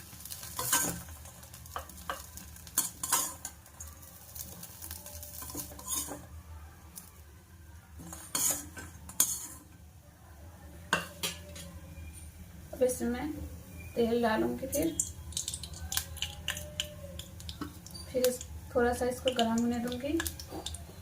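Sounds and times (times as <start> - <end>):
spatula scraping a pan: 0.4 - 1.1, 5.0 - 6.3, 8.0 - 9.7.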